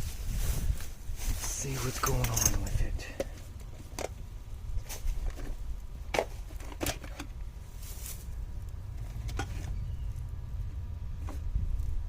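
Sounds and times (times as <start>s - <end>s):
steady low rumble: 7.4s - 12.0s.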